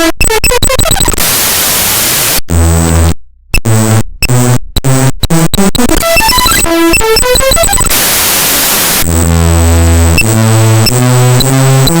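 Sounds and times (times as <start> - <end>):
loud hiss: 7.9 - 9.0.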